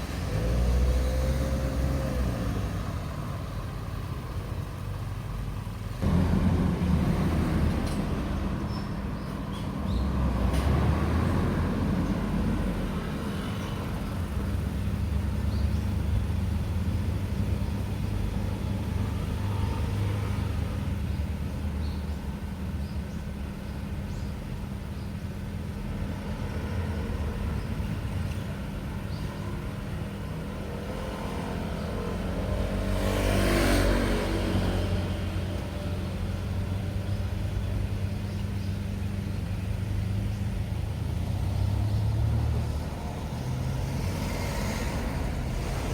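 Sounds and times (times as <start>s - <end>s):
vehicle passing close by: 0.0s - 3.8s, 6.0s - 9.2s, 9.9s - 17.0s, 30.5s - 37.8s, 40.2s - 45.9s
vehicle engines idling: 0.0s - 33.1s, 33.8s - 45.9s.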